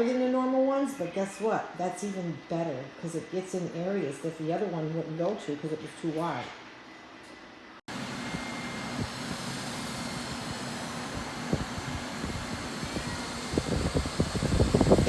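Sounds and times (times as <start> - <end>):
robot vacuum running: 7.9 - 15.0.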